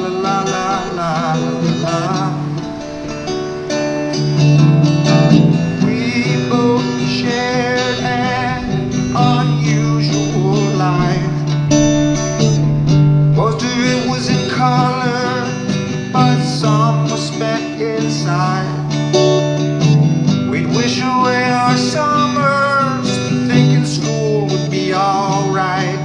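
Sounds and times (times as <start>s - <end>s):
acoustic guitar strumming: 0.0s - 26.0s
wavering higher melody line: 0.4s - 16.2s.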